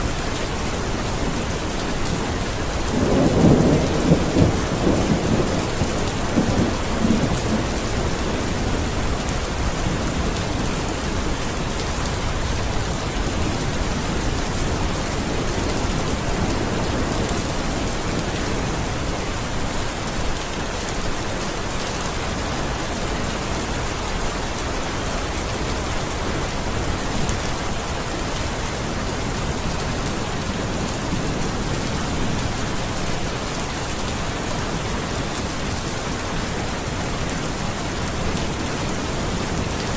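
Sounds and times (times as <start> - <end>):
steady rain falling: 0.0 - 39.9
thunder rumble: 2.8 - 9.8.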